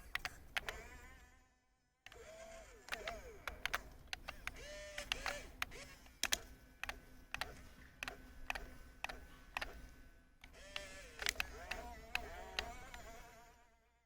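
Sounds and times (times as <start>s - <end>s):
plastic clicks and rattles: 0.0s - 0.9s, 2.8s - 9.8s, 10.4s - 13.2s
small electric motors whining: 0.0s - 1.5s, 2.1s - 14.0s.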